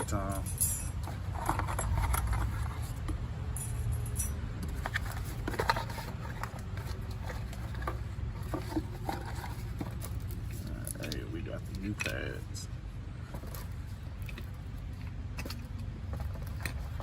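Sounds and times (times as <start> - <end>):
metallic clinks and rattles: 0.0 - 12.3.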